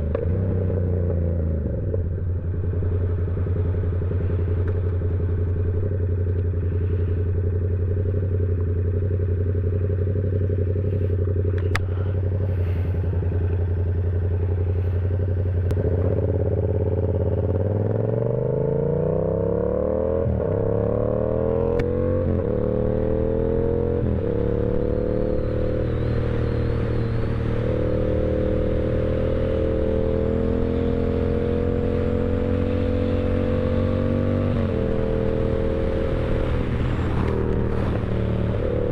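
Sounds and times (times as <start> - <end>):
motorcycle engine revving and upshifting: 9.8 - 38.9.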